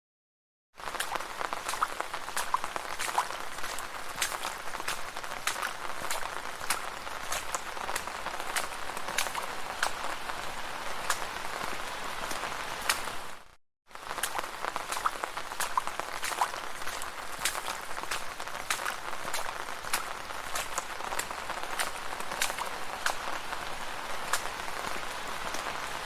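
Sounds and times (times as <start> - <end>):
rain falling on a street: 0.8 - 26.0.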